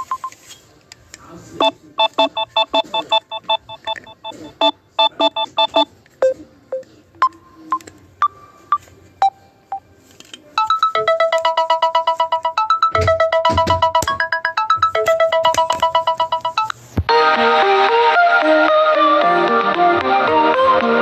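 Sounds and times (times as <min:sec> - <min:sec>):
beeping electronic ringtone: 0:00.0 - 0:00.3, 0:01.6 - 0:05.9, 0:10.6 - 0:16.8
busy electronic ringtone melody: 0:01.6 - 0:05.9, 0:10.6 - 0:16.8
ringtone melody of single notes: 0:10.6 - 0:18.6.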